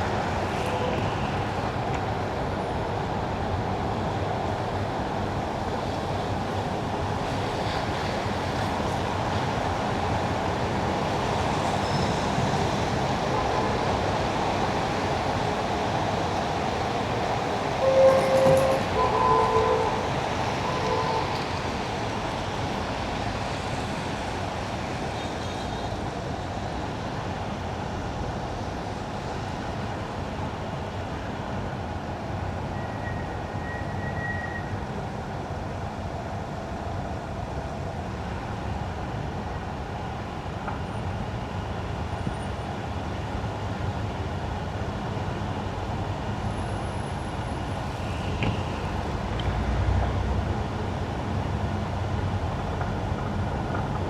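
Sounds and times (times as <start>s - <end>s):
tyres on wet road: 5.5s - 30.2s, 40.7s - 54.0s
traffic rumble: 5.8s - 25.1s, 45.5s - 54.0s.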